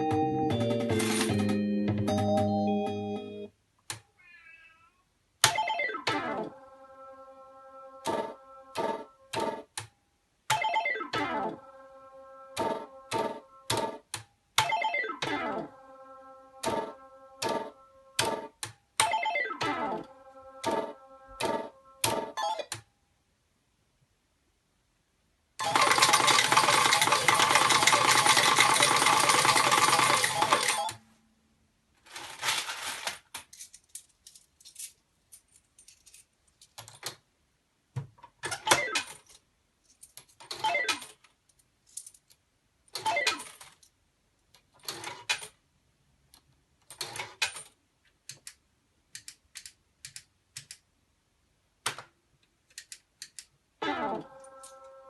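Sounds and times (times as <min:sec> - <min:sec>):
metal tokens clattering: 0:00.6 - 0:01.5, 0:25.6 - 0:31.0, 0:32.0 - 0:37.1, 0:38.6 - 0:43.9.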